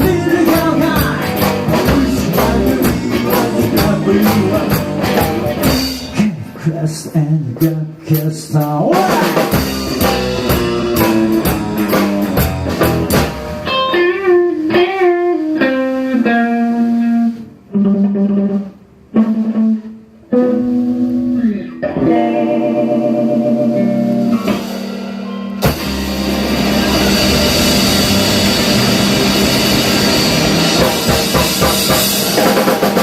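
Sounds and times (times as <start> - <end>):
rockabilly band playing: 0.0 - 33.0
electric guitar solo: 13.6 - 30.8.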